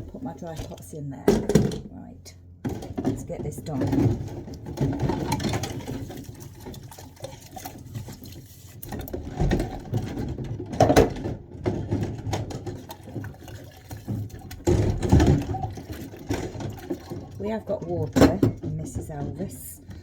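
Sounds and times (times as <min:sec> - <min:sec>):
water sloshing in a sink: 0:00.0 - 0:02.0, 0:02.6 - 0:20.0
pots and dishes knocking together: 0:02.6 - 0:06.1, 0:09.0 - 0:20.0.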